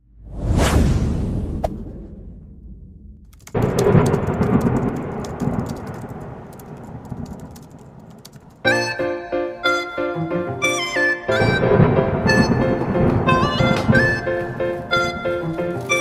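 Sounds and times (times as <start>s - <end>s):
crackling rumble: 0.0s - 8.7s, 11.3s - 16.0s
melodic music: 8.6s - 16.0s.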